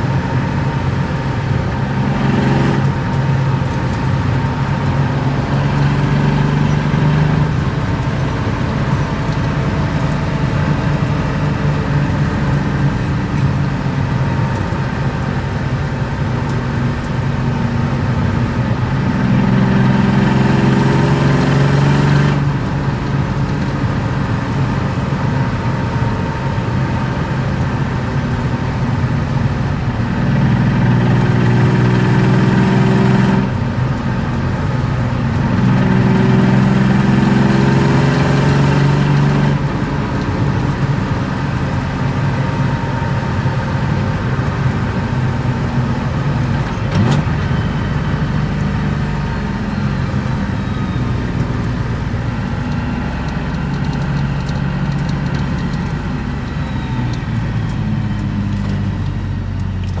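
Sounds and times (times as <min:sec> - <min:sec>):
car engine from inside cabin: 0:00.0 - 1:00.0.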